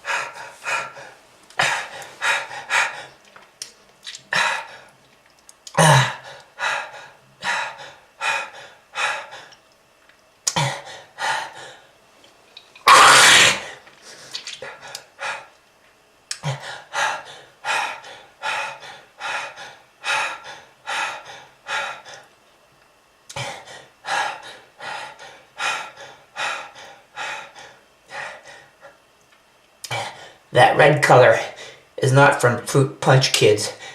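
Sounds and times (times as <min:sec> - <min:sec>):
person coughing in fits: 0:05.8 - 0:06.2.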